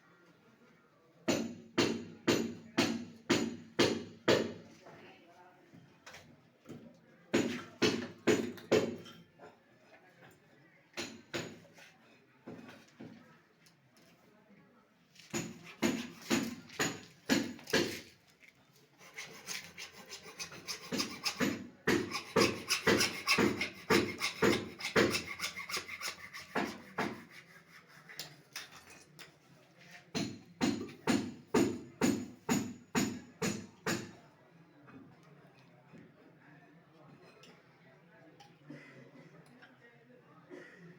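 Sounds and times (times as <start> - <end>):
hand tool rasping on pipe: 19.0 - 28.8.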